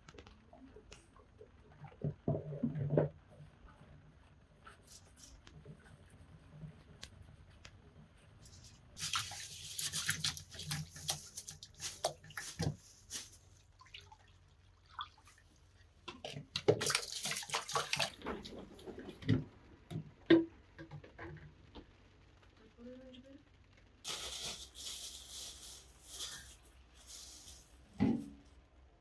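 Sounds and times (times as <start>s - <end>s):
water splashing and pouring: 8.5s - 19.1s, 24.1s - 28.0s.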